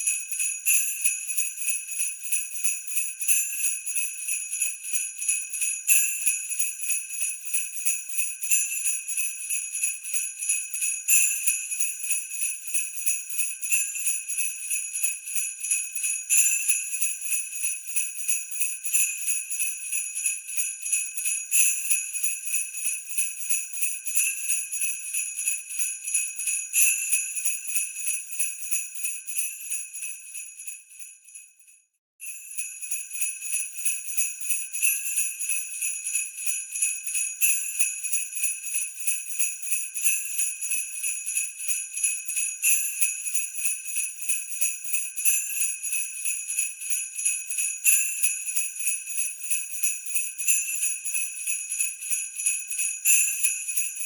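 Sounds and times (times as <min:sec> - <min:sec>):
sleigh bells jingling: 0:32.4 - 0:54.0.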